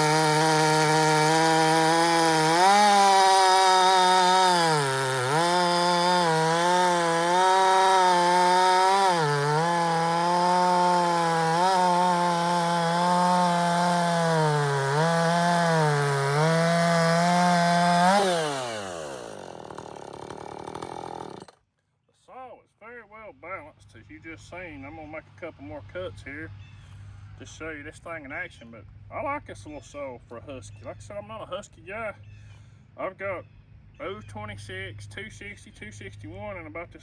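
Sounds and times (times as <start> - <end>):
chainsaw cutting wood: 0.0 - 21.6.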